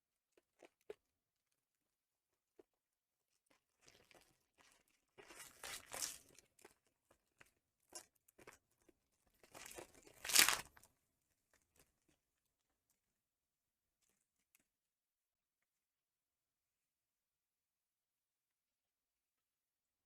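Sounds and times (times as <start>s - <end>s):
foil wrapper tearing: 10.1s - 10.7s
wrapper crinkling: 10.1s - 10.7s.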